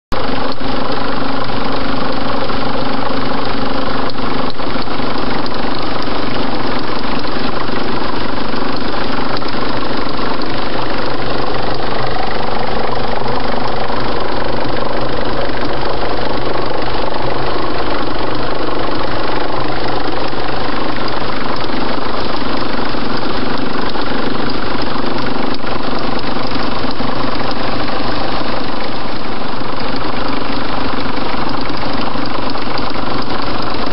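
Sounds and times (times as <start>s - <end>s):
car engine idling: 0.1s - 33.9s.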